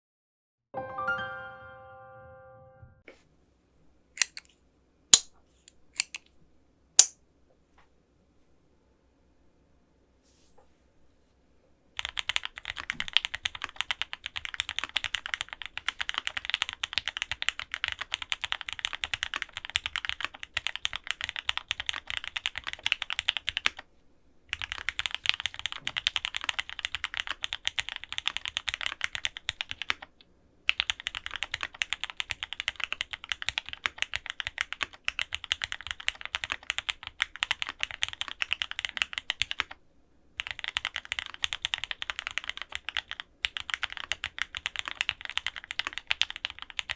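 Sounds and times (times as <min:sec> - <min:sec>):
typing on mechanical keyboard: 0:12.0 - 0:23.9, 0:24.5 - 0:30.1, 0:30.7 - 0:39.8, 0:40.4 - 0:46.9.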